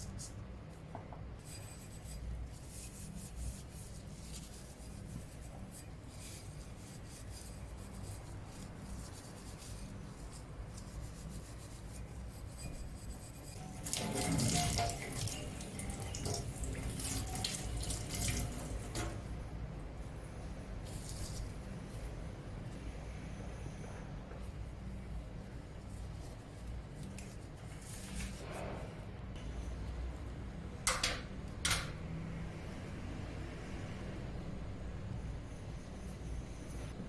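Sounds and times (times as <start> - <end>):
tap water running into sink: 13.6 - 19.2.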